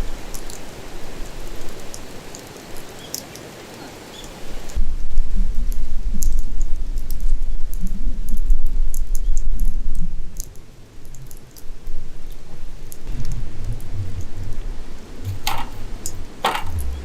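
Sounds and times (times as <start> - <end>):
campfire crackling: 0.0 - 17.0
heavy low rumble: 4.8 - 17.0.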